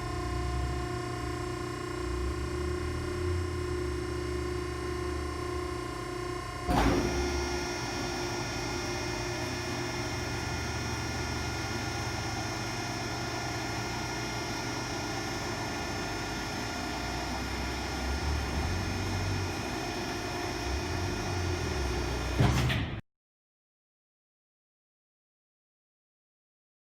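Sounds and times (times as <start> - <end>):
hydraulic motor and pump humming: 0.0 - 23.0
machine clunk: 6.7 - 8.6, 21.8 - 23.0.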